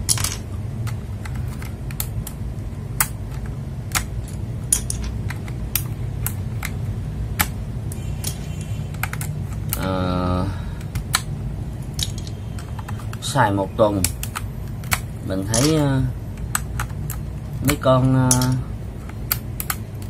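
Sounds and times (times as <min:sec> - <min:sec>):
steady low hum: 0:00.0 - 0:20.0
plastic keyboard clicks: 0:08.2 - 0:09.9, 0:14.0 - 0:15.8, 0:16.4 - 0:20.0.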